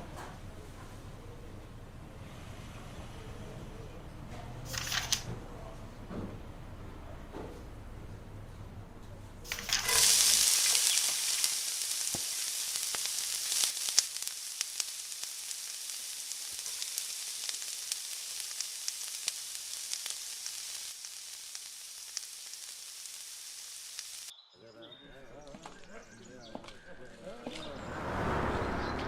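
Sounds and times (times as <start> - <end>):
oil crackling and popping: 4.7 - 5.2, 9.5 - 24.3
food sizzling in hot oil: 9.5 - 24.3.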